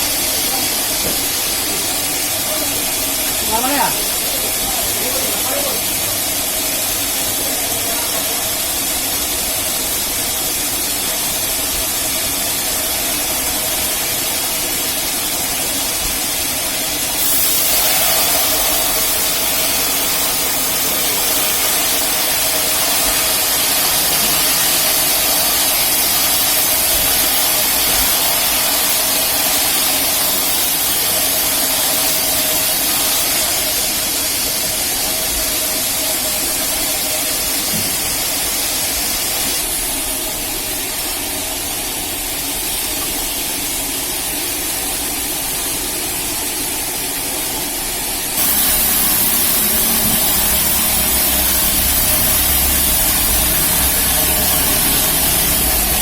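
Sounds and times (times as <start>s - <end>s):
band sawmill cutting wood: 16.7s - 39.8s, 48.4s - 56.0s.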